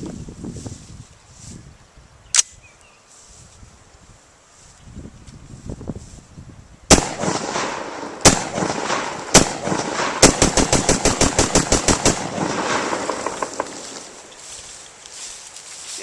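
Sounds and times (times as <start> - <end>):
gunshots with echo: 6.9 - 14.2.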